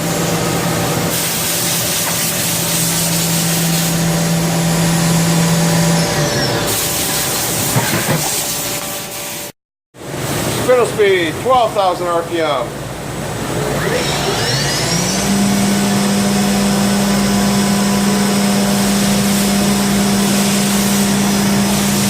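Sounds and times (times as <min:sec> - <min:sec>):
machine spindle humming: 0:13.1 - 0:22.0.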